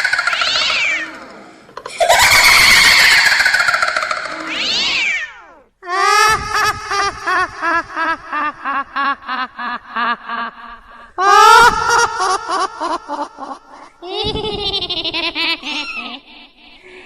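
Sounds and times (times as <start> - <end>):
high-pitched effected voice cry: 0.0 - 6.4.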